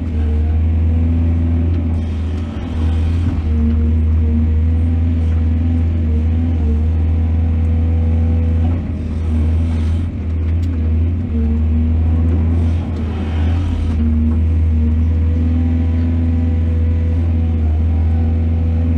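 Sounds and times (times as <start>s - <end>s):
diesel engine low rumble: 0.0s - 18.9s
whining tone: 0.0s - 18.9s.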